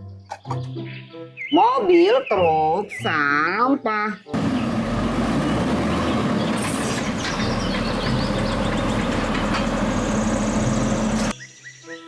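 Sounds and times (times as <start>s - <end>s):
chirps: 0.1s - 4.8s, 5.5s - 12.0s
truck engine humming: 4.3s - 11.3s.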